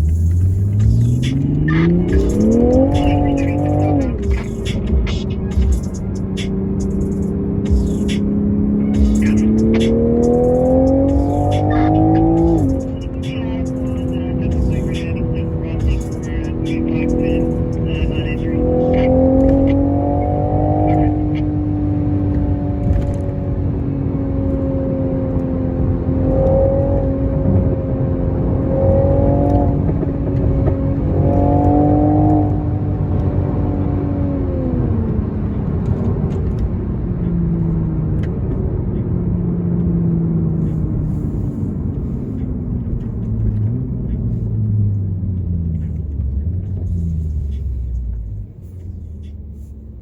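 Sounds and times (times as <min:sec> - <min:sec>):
car engine and exhaust: 0:00.0 - 0:50.0.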